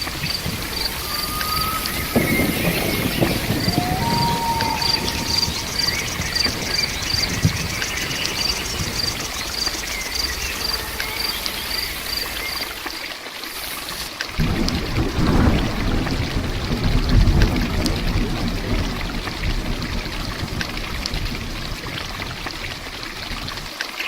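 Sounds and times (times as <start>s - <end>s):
cricket chirping: 0.0s - 14.6s
steady rain: 0.0s - 24.0s
short bird whistle: 1.0s - 7.0s.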